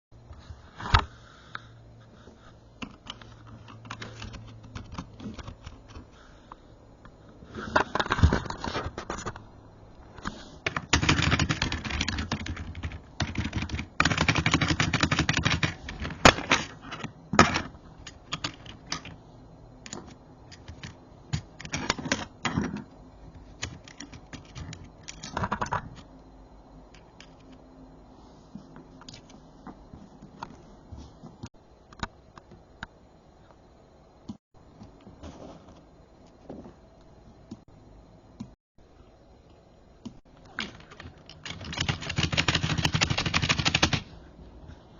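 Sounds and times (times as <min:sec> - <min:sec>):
keyboard typing: 0:02.8 - 0:06.1, 0:10.7 - 0:16.4, 0:18.0 - 0:19.2, 0:23.4 - 0:25.8, 0:40.5 - 0:44.0.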